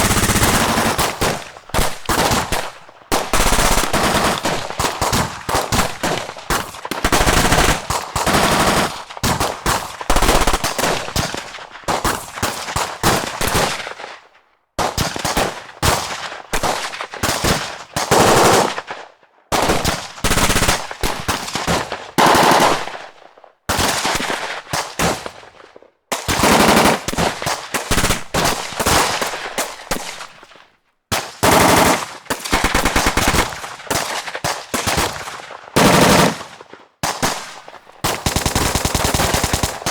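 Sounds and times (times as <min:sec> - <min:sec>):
machine-gun bursts: 0:00.0 - 0:09.5, 0:18.1 - 0:18.8, 0:22.2 - 0:23.0, 0:26.3 - 0:29.2, 0:31.4 - 0:34.0, 0:35.8 - 0:36.6, 0:37.2 - 0:39.9.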